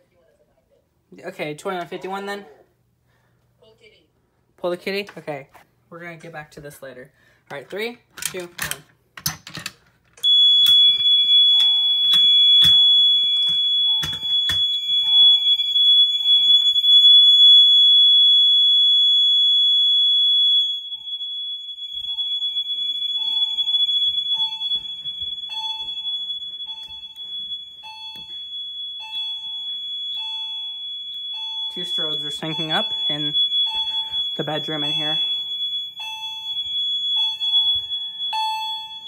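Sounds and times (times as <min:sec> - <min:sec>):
fire alarm horn tone: 0:10.2 - 0:39.0.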